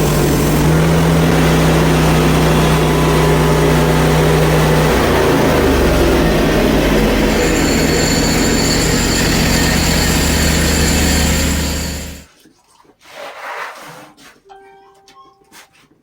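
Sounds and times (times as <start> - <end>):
band saw blade whining through wood: 0.0 - 12.3
sawmill engine running: 0.0 - 12.3.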